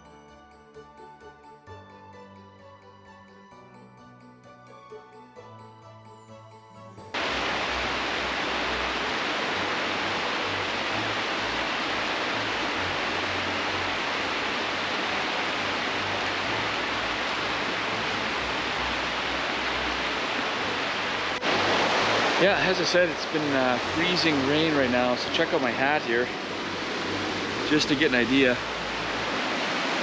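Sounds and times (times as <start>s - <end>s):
river water rushing: 7.2s - 30.0s.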